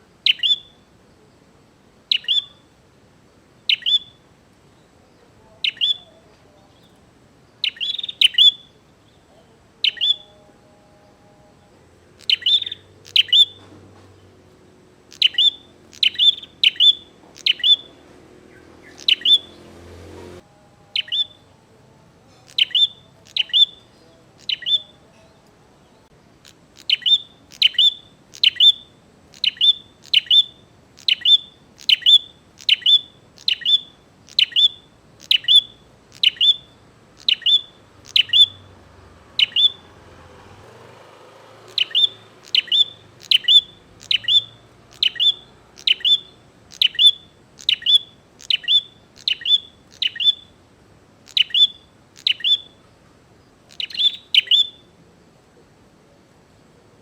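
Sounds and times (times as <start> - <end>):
bird chip notes: 15.1 - 21.6, 22.2 - 38.8, 41.7 - 50.6.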